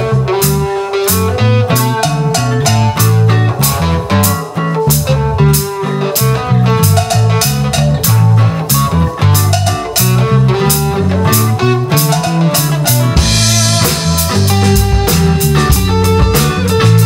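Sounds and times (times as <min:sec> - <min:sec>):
bass notes: 0:00.0 - 0:17.0
drum kit beat: 0:00.0 - 0:17.0
guitar: 0:00.0 - 0:17.0.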